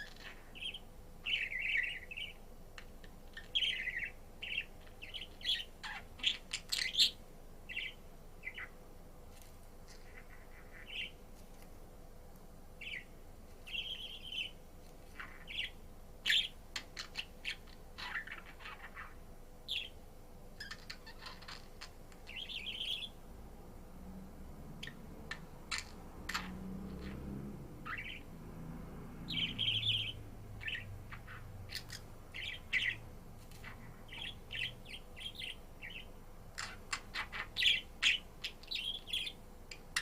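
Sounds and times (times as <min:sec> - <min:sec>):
budgerigar chirping: 0:00.0 - 0:02.4, 0:03.3 - 0:08.7, 0:10.1 - 0:11.2, 0:12.8 - 0:13.1, 0:13.7 - 0:14.6, 0:15.2 - 0:20.0, 0:20.6 - 0:23.2, 0:24.8 - 0:27.2, 0:27.8 - 0:28.2, 0:29.3 - 0:40.0
sharp bird clicks: 0:24.8 - 0:27.2, 0:33.6 - 0:40.0.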